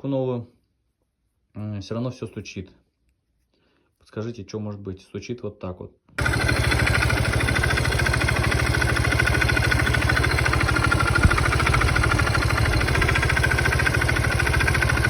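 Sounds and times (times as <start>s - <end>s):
scooter engine idling with knock: 6.2s - 15.0s.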